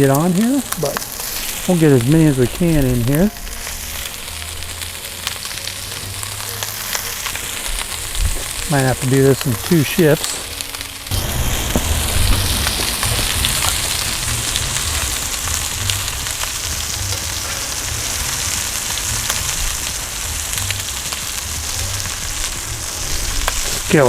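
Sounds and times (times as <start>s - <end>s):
meatballs sizzling in hot oil: 0.0s - 24.0s
low rumble: 9.4s - 23.9s.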